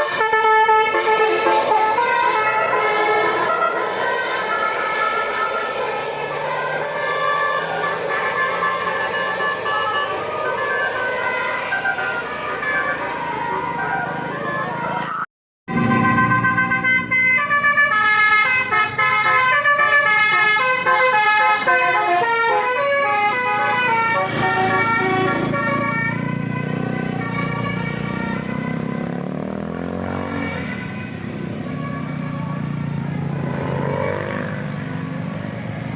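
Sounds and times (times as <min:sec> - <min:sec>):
musical vehicle horn melody: 0:00.0 - 0:35.9.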